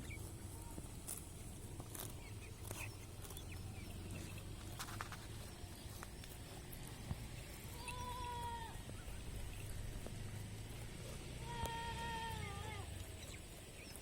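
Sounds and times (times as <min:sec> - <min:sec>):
goat bleating: 0:07.7 - 0:08.8, 0:11.3 - 0:13.1.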